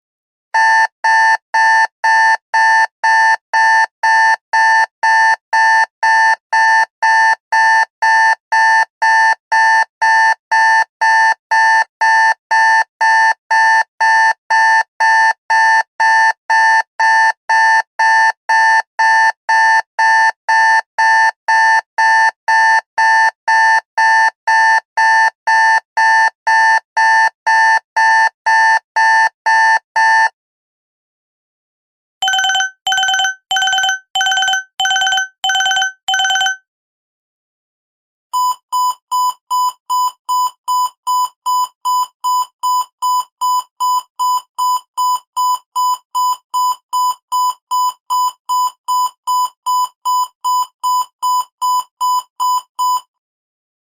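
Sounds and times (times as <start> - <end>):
alarm clock beeping: 32.2 - 36.6.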